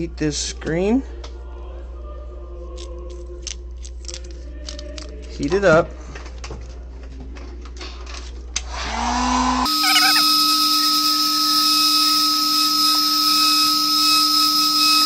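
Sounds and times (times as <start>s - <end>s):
hot-air tool fan whine: 8.6s - 15.0s.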